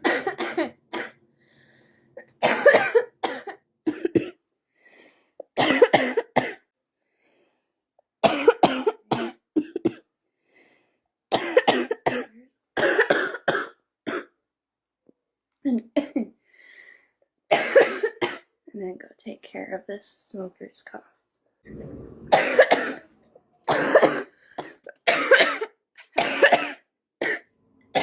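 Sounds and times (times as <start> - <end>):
girl coughing: 0.0 - 1.2, 2.4 - 4.4, 5.6 - 6.6, 8.2 - 10.0, 11.4 - 14.3, 17.5 - 18.5, 23.7 - 27.4.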